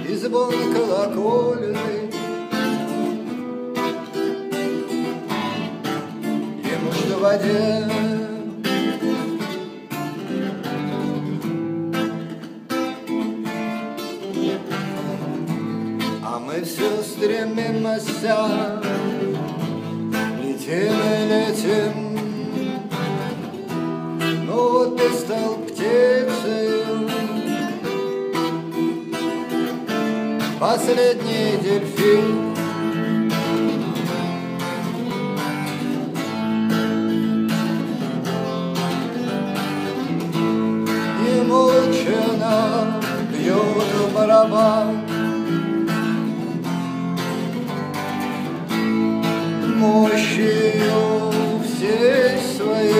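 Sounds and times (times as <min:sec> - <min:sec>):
person singing: 0:00.0 - 0:03.1, 0:04.8 - 0:09.4, 0:16.0 - 0:28.2, 0:29.9 - 0:34.4, 0:40.1 - 0:45.7, 0:48.9 - 0:52.9
acoustic guitar strumming chords: 0:00.0 - 0:52.9.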